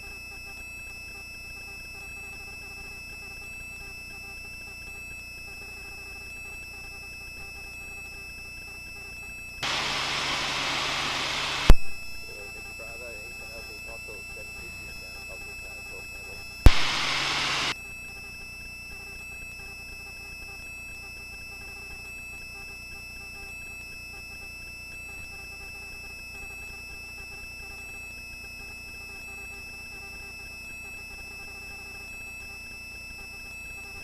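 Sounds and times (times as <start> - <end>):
helicopter cabin hum: 9.6 - 17.8
high whining tones: 9.6 - 17.8
loud hiss: 9.6 - 17.8.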